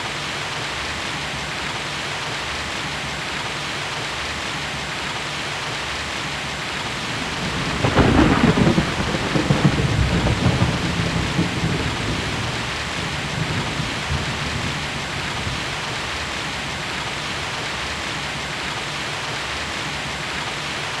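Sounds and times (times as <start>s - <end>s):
heavy rain: 0.0s - 21.0s
thunder rumbling: 7.1s - 15.8s.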